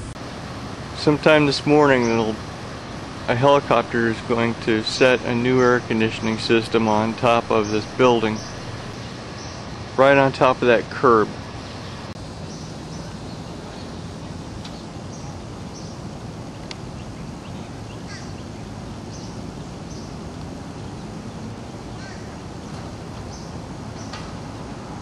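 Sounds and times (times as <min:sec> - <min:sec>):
outdoor background rumble: 0:00.0 - 0:25.0
high bird chirps: 0:04.5 - 0:09.7.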